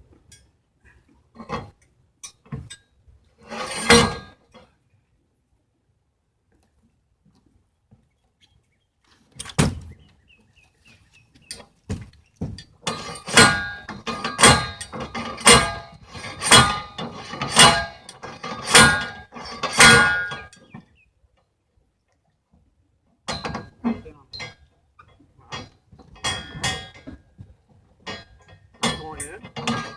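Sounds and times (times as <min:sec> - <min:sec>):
metal pipes being pounded: 0:03.5 - 0:04.4, 0:12.4 - 0:20.6, 0:23.3 - 0:23.8, 0:25.5 - 0:27.2, 0:28.0 - 0:29.9.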